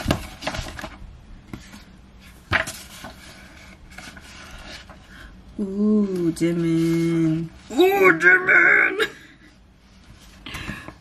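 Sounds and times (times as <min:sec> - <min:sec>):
paper and cardboard rustling: 0:00.0 - 0:05.1, 0:06.0 - 0:08.2.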